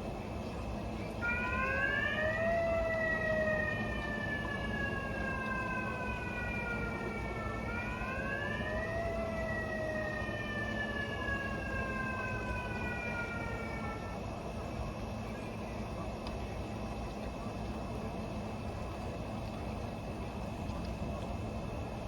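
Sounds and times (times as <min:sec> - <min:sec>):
megaphone siren wailing: 0:01.2 - 0:14.2.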